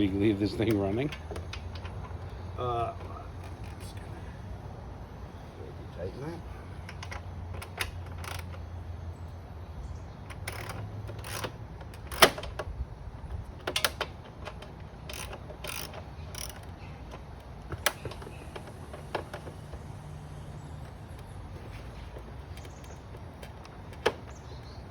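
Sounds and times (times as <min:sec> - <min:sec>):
steady low hum: 0:00.0 - 0:24.9
hand tools clicking on metal: 0:10.3 - 0:12.7, 0:13.6 - 0:19.8.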